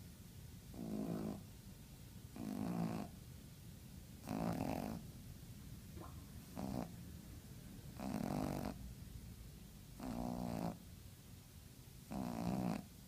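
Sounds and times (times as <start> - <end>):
dog snoring: 0.7 - 1.5, 2.3 - 3.2, 4.2 - 5.1, 6.5 - 7.0, 8.0 - 8.8, 10.0 - 10.8, 12.0 - 13.0.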